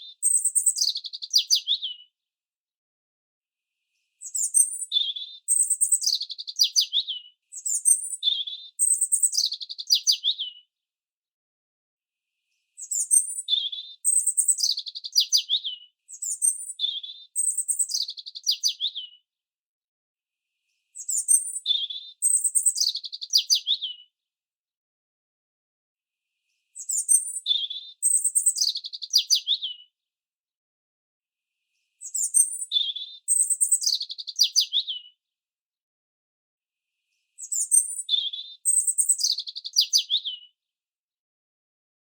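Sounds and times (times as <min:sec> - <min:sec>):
bird chirping: 0:00.0 - 0:02.1, 0:04.2 - 0:10.7, 0:12.8 - 0:19.2, 0:21.0 - 0:24.1, 0:26.8 - 0:29.9, 0:32.0 - 0:35.2, 0:37.4 - 0:40.5.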